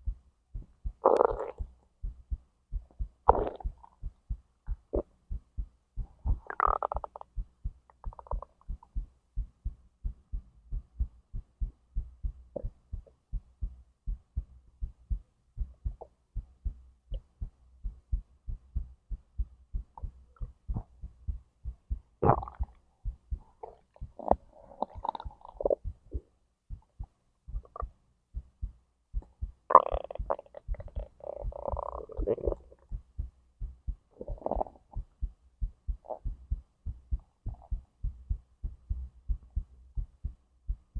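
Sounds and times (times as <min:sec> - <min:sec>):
heartbeat thumping: 0:00.0 - 0:40.9
stomach gurgling: 0:01.0 - 0:01.7, 0:03.3 - 0:03.8, 0:06.3 - 0:07.3, 0:22.2 - 0:22.8, 0:23.6 - 0:26.2, 0:29.7 - 0:32.8, 0:34.2 - 0:35.0.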